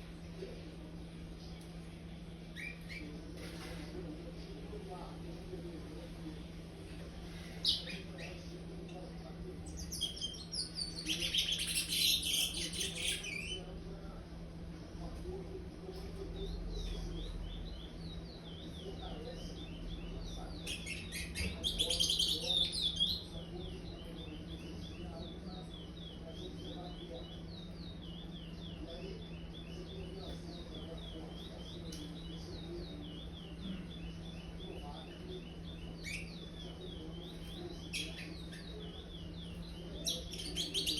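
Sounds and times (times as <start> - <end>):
bird twittering song: 1.3 - 3.2, 7.3 - 13.8, 16.0 - 40.9
bird chirps: 19.6 - 40.9.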